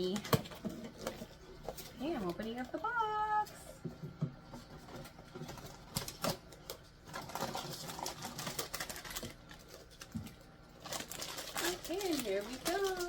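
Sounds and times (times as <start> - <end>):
packaging rustling: 4.7 - 13.0.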